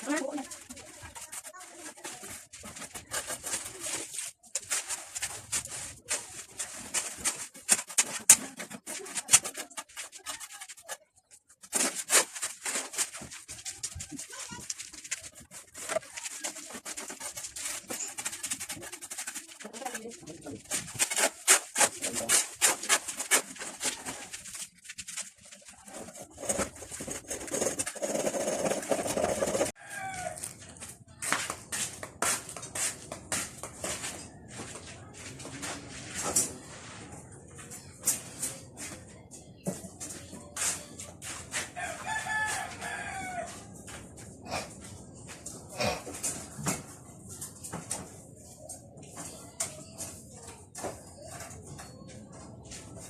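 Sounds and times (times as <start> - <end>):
rapid scraping strokes: 0.0 - 29.8.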